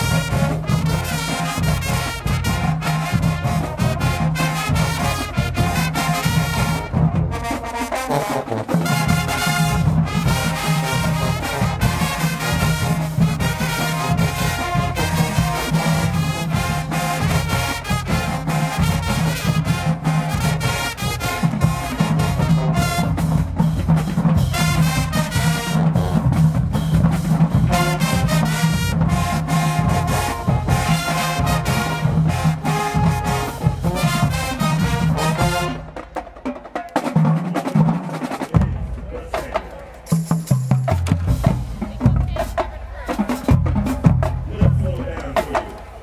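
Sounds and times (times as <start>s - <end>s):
brass section playing tune: 0.0s - 36.2s
drumline beat: 0.0s - 46.0s.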